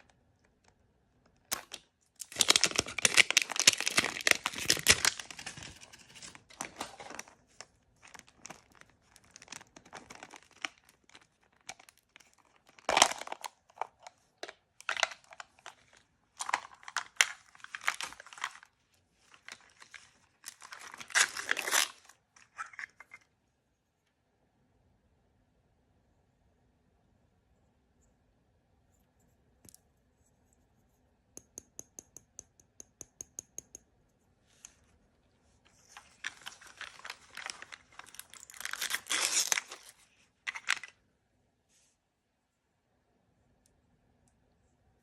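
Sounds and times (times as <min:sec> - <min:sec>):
plastic packaging crinkling: 0:01.4 - 0:23.1, 0:35.7 - 0:41.0.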